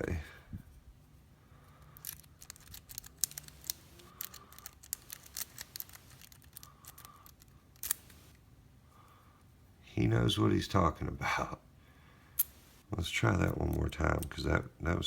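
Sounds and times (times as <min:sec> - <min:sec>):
lock pick raking metallic clicks: 0:02.0 - 0:08.3.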